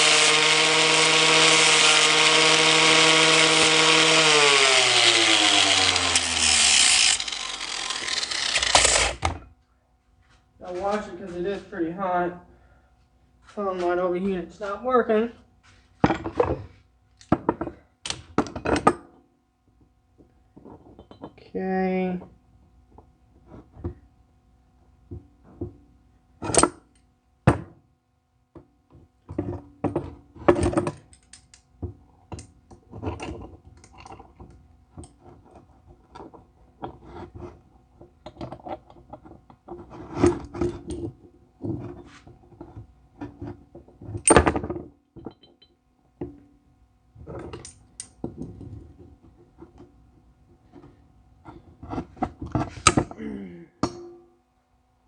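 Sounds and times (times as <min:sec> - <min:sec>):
faint steady hum: 0:05.0 - 0:55.0.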